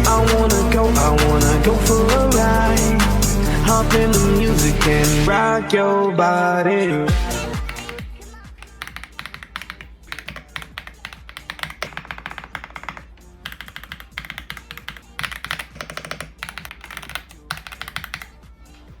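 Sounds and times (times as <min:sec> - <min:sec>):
background music: 0:00.0 - 0:19.0
mechanical keyboard typing: 0:08.6 - 0:18.4.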